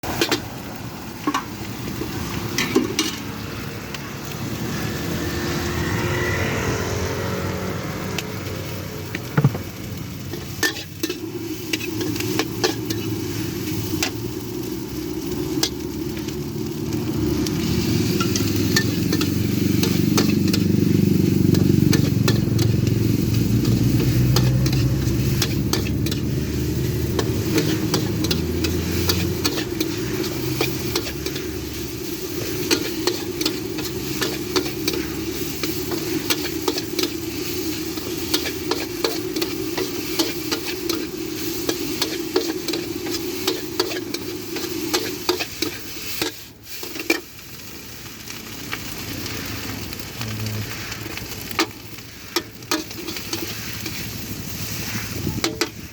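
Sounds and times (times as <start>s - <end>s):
food sizzling in a wok: 0.0s - 55.9s
low rumble: 13.2s - 32.5s.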